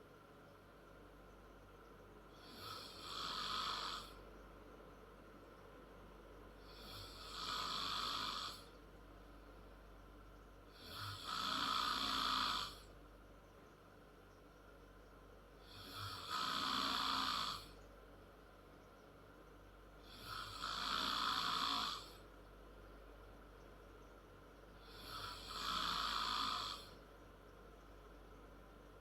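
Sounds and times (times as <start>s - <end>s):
quiet breathing: 2.2s - 4.4s, 6.5s - 8.9s, 10.6s - 13.0s, 15.4s - 18.0s, 19.9s - 22.4s, 24.6s - 27.7s
girl snoring loudly: 2.4s - 4.1s, 6.7s - 8.7s, 10.8s - 12.8s, 15.7s - 17.7s, 20.1s - 22.2s, 24.9s - 26.9s.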